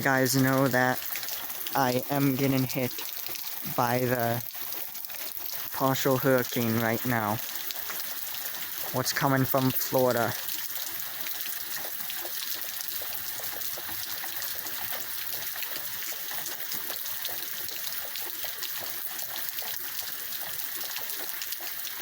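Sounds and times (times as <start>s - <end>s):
heavy rain pattering: 0.0s - 22.0s
water trickling: 0.0s - 22.0s.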